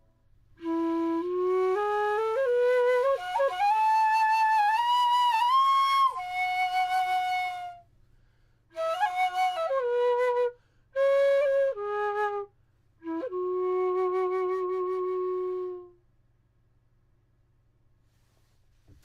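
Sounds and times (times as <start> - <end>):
bamboo flute solo: 0.6 - 7.9, 8.7 - 16.0.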